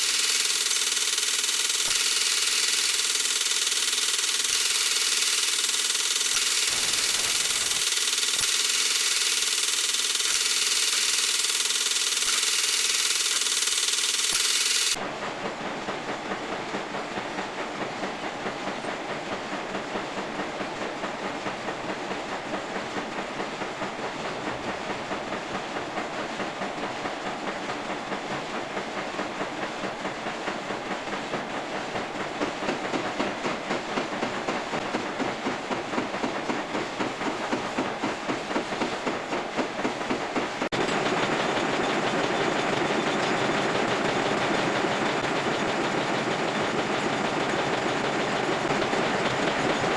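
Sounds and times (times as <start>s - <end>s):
metal lathe clattering: 0.0s - 15.0s, 40.7s - 49.9s.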